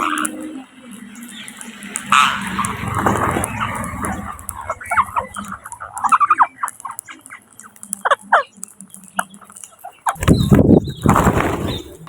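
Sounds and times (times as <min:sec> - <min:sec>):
parakeets calling: 0:00.0 - 0:12.0
loud rushing noise bursts: 0:01.5 - 0:06.2.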